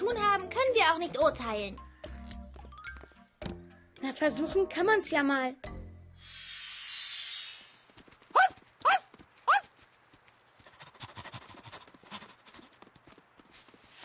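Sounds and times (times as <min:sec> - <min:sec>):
footstep-like ticking: 0:02.0 - 0:04.0
upward sliding chirps: 0:06.2 - 0:08.0
soft rustling: 0:12.4 - 0:14.0.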